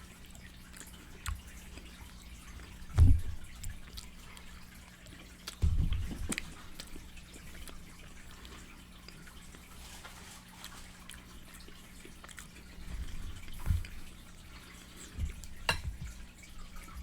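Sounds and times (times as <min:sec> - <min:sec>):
low steady hum: 0:00.0 - 0:17.0
wet chewing and lip smacking: 0:00.3 - 0:02.8, 0:03.4 - 0:09.7, 0:10.6 - 0:12.8.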